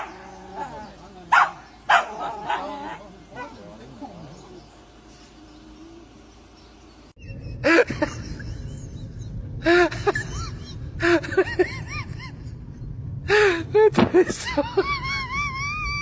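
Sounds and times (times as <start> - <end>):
animal whining cries: 0.0 - 6.4
faint hum: 0.0 - 16.0.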